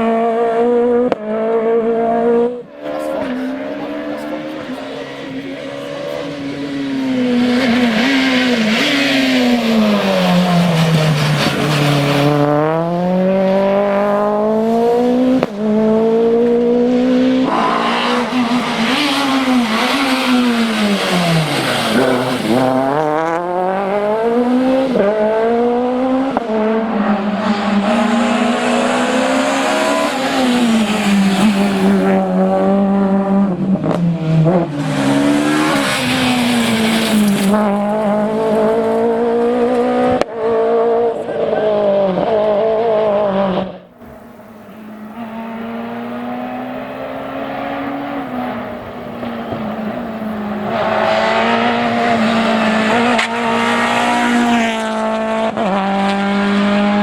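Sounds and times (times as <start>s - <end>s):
rally car engine at full throttle: 0.0s - 57.0s.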